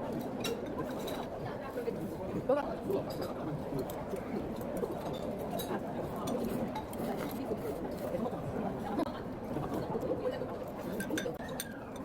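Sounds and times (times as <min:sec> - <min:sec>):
utensils clinking against dishes: 0:10.9 - 0:12.0.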